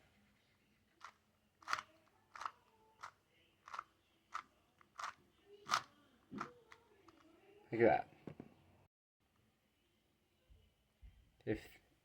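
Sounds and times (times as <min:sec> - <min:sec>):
puzzle cube plastic clicks: 0:01.0 - 0:07.3.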